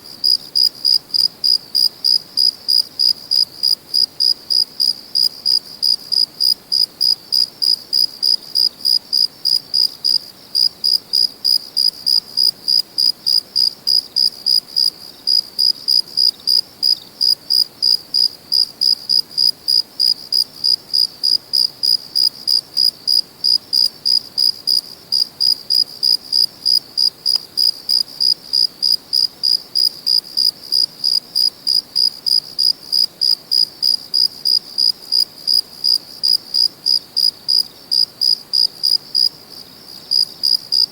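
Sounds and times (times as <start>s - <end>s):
cricket chirping: 0.0s - 40.9s
faint background hiss: 0.0s - 40.9s.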